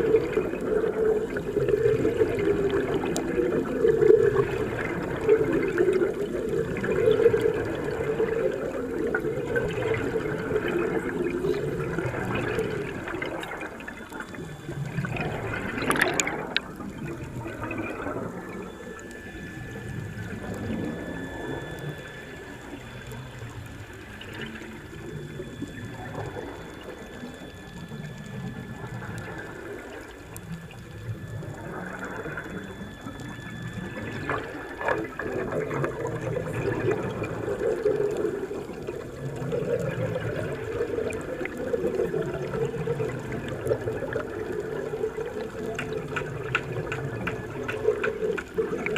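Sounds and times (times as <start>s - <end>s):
water gurgling and sloshing: 0.0s - 48.9s
rising whistle-like sweep: 10.4s - 38.4s.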